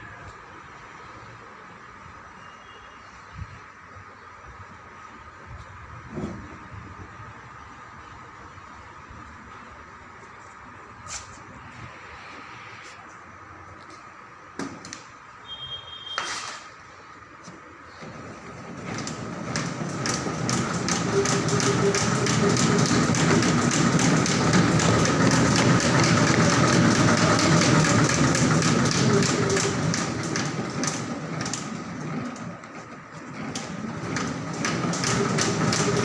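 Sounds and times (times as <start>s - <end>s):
short beep: 15.4s - 16.6s
steady machine whine: 18.2s - 36.0s
fast continuous knocking: 18.6s - 36.0s.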